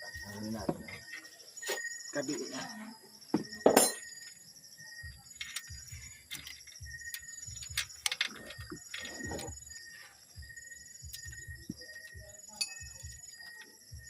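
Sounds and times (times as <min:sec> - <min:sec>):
insects chirping: 0:00.0 - 0:14.0
metallic clinks of hand tools: 0:11.1 - 0:13.7.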